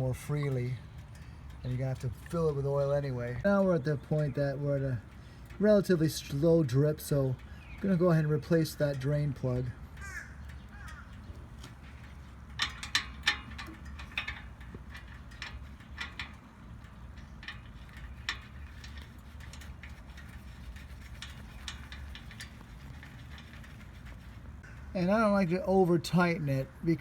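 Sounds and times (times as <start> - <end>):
steady low hum: 0.0 - 27.0
wrench clicking on metal: 9.9 - 24.6.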